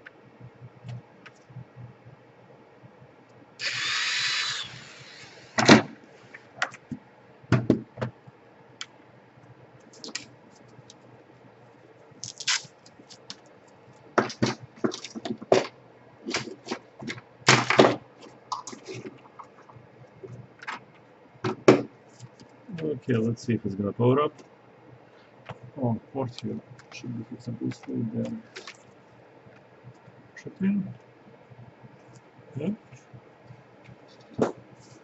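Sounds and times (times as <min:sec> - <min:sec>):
brief hissing whir: 0:03.6 - 0:05.8.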